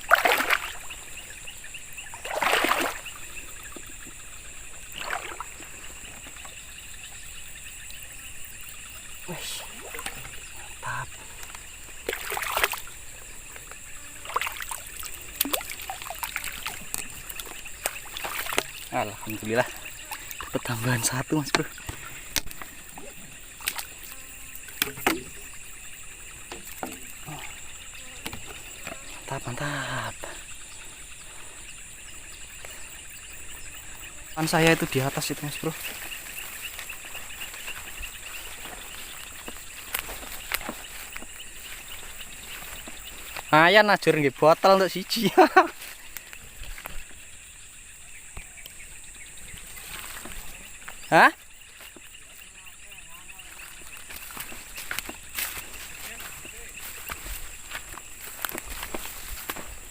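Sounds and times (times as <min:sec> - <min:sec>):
water splashing and dripping: 0:00.0 - 0:30.4, 0:34.4 - 0:47.2
constant high hiss: 0:00.0 - 0:59.9
insects chirring: 0:00.0 - 0:59.9.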